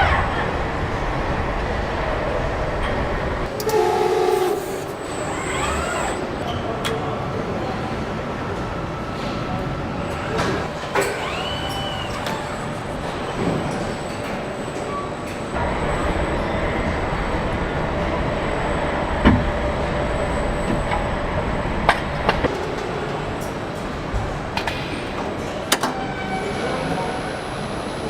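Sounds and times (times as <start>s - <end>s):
machinery mechanical din: 0.0s - 6.5s, 15.2s - 26.1s.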